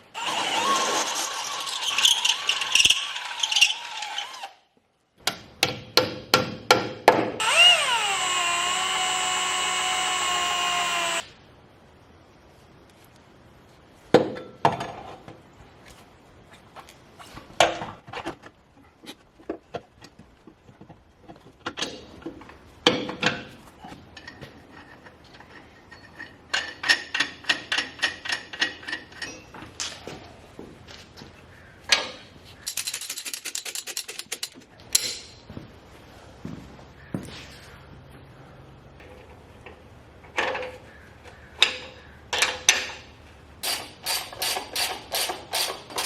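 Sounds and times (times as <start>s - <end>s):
tools clanking on metal: 21.6s - 30.0s, 31.9s - 35.6s.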